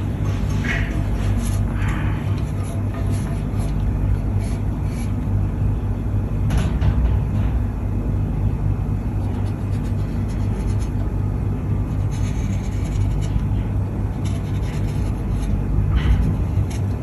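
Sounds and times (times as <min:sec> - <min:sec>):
marker pen scratching on metal: 0:00.0 - 0:05.2, 0:09.2 - 0:11.1, 0:11.8 - 0:17.0
steady low hum: 0:00.0 - 0:17.0.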